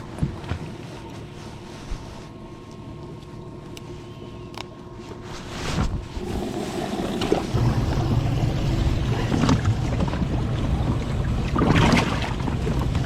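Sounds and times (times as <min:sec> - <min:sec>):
boat engine drone: 0:00.0 - 0:13.0
wind: 0:00.0 - 0:13.0
water noise: 0:06.0 - 0:13.0.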